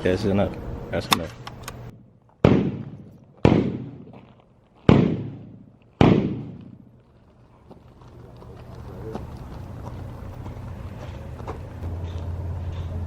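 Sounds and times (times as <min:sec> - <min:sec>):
gunshots echoing: 0:02.4 - 0:04.2, 0:04.9 - 0:06.9.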